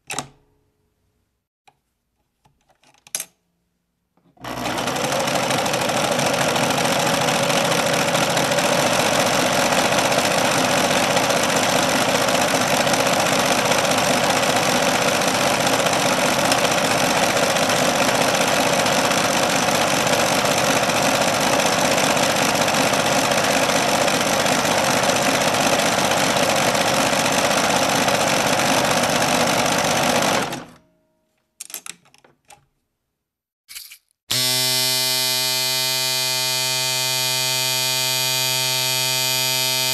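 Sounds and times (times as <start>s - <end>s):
appliance motor rattling: 4.4s - 30.8s.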